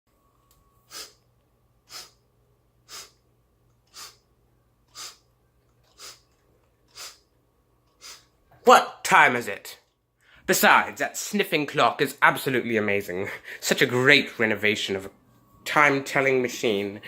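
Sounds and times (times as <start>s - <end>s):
short sniffs like clock ticks: 0.9s - 1.2s, 1.9s - 2.2s, 2.9s - 3.2s, 3.9s - 4.3s, 4.9s - 5.2s, 5.9s - 6.3s, 6.9s - 7.3s, 7.9s - 8.3s.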